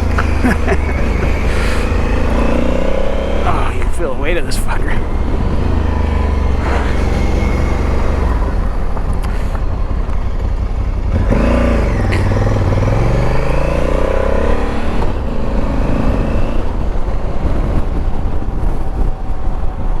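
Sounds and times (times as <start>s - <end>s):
motorcycle engine running: 0.0s - 4.2s, 4.8s - 19.5s
rushing noise: 0.0s - 10.6s.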